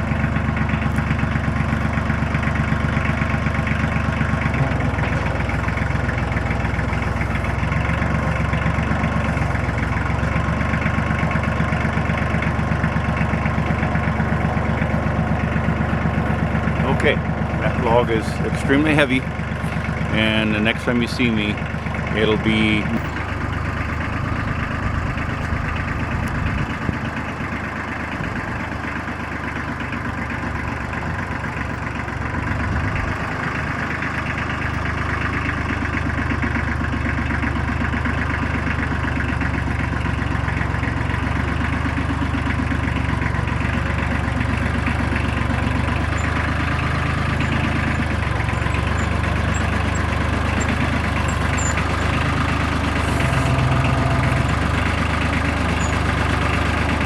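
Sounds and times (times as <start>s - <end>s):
tractor engine running: 0.0s - 57.0s.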